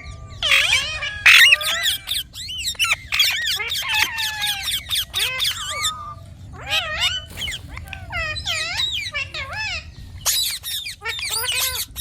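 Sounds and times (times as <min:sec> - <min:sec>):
parrot chattering and squawking: 0:00.3 - 0:12.0.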